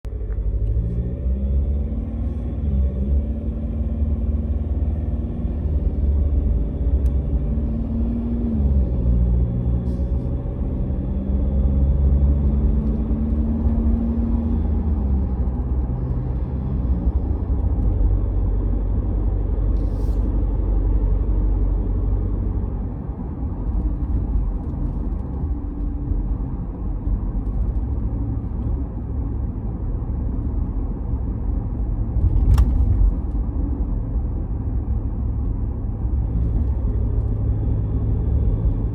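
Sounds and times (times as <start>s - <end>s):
diesel engine rumbling: 0.0s - 38.9s.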